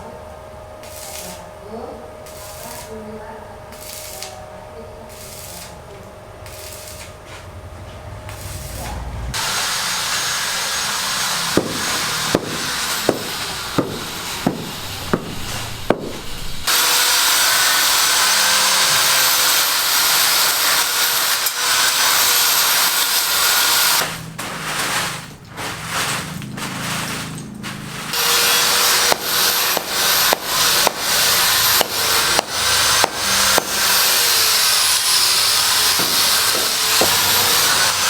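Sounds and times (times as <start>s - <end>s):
power tool running: 6.4s - 38.0s
rough sawing noise: 6.5s - 38.0s
regular knocks: 11.5s - 16.7s.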